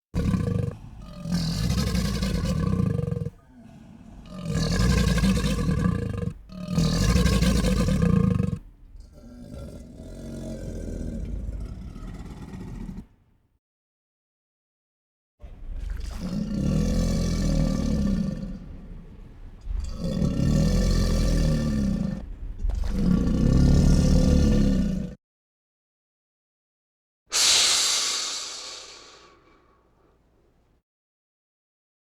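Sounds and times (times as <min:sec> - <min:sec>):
animal roars: 0:00.1 - 0:13.2, 0:15.4 - 0:25.2.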